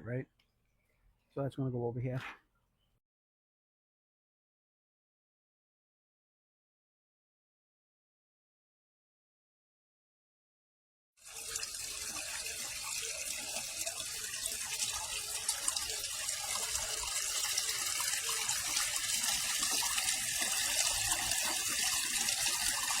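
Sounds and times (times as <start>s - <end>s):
water splashing from a hose: 11.2s - 23.0s.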